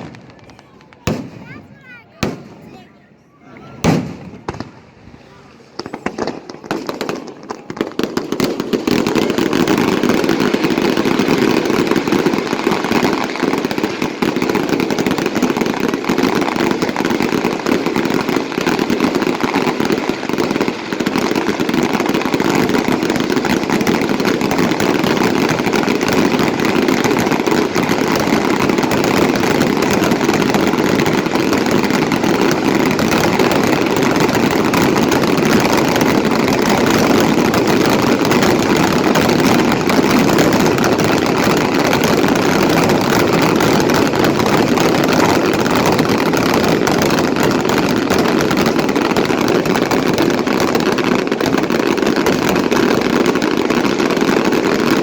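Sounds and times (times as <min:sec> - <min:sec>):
fireworks crackling: 0:00.0 - 0:55.0.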